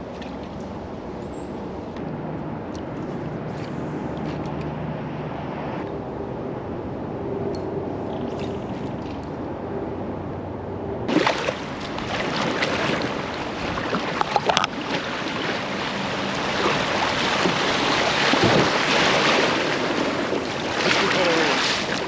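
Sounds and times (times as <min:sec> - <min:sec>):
creek water rushing: 0:11.1 - 0:22.0.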